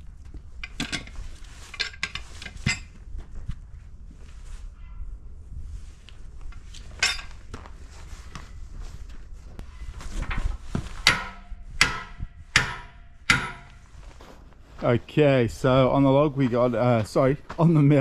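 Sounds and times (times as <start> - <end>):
metallic clanks and knocks: 10.2 - 13.9
ringing metal strikes: 11.0 - 13.8.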